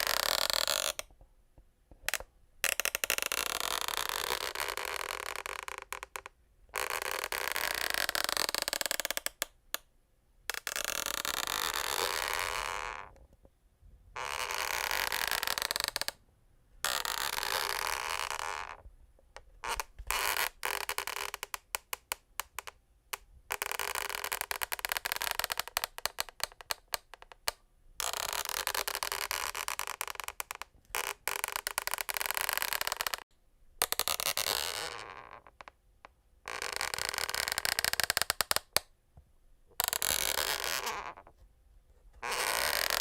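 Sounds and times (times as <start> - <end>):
wooden floorboards creaking: 28.7 - 33.2.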